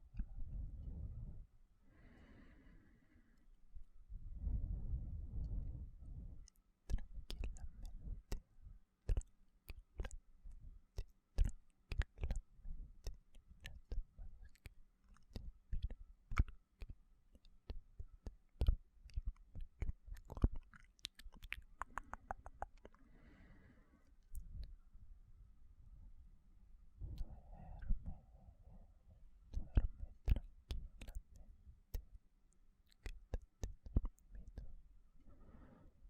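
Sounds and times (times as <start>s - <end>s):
soft breath: 0.2s - 8.8s, 21.8s - 24.9s, 26.9s - 31.6s, 34.4s - 36.0s
wet mouth clicks and smacks: 6.3s - 23.0s, 24.2s - 24.8s, 29.5s - 32.2s, 32.8s - 34.8s.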